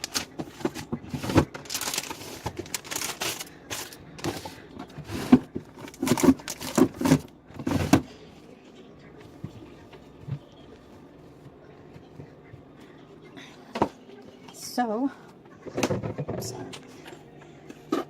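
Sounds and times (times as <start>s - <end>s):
food packaging crinkling: 0.0s - 7.3s.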